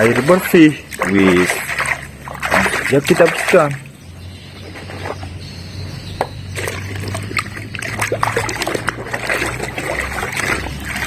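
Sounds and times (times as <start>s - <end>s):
water splashing in a basin: 0.0s - 4.0s, 6.4s - 11.0s.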